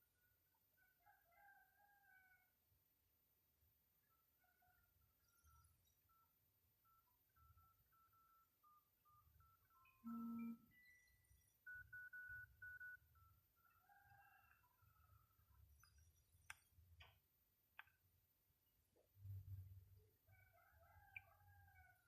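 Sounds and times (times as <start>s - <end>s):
phone buzzy tone: 7.9s - 13.0s
short high phone beeps: 10.0s - 10.9s.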